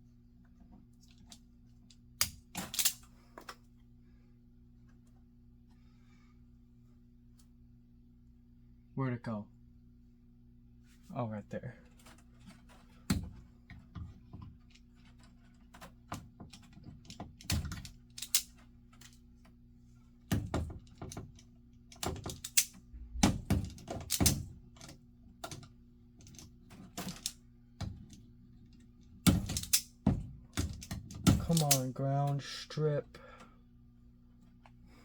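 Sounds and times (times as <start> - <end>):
low electrical hum: 0.0 - 35.0
hand tools clicking and snipping wire: 2.2 - 3.0, 15.0 - 19.1, 20.5 - 22.8, 29.2 - 29.9, 30.6 - 32.4.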